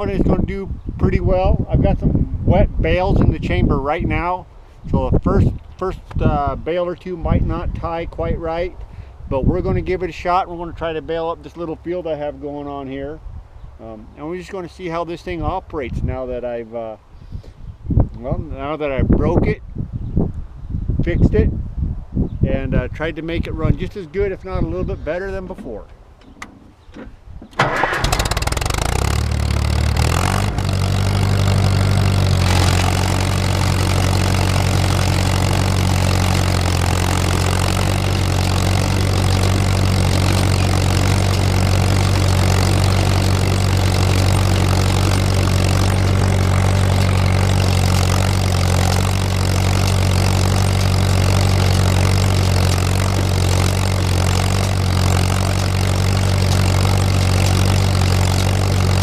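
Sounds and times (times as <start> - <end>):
tractor engine starting and running: 23.4 - 59.0.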